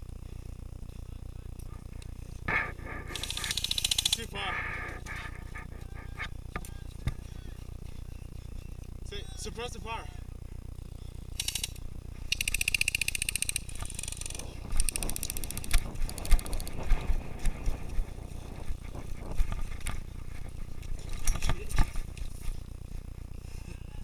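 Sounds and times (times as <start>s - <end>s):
airsoft rifle full-auto bursts: 3.1s - 4.3s, 11.4s - 16.8s.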